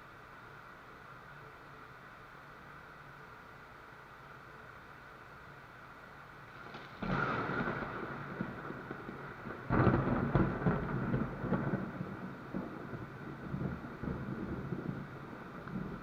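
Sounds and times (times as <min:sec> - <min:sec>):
rain hissing: 0:00.0 - 0:16.0
thunder rumbling: 0:06.7 - 0:16.0.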